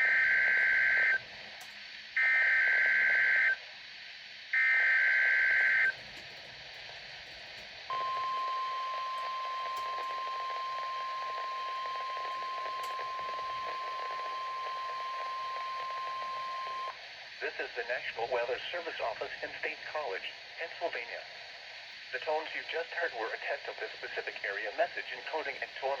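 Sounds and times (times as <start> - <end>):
steady warning alarm tone: 0.0 - 1.3, 4.6 - 17.0.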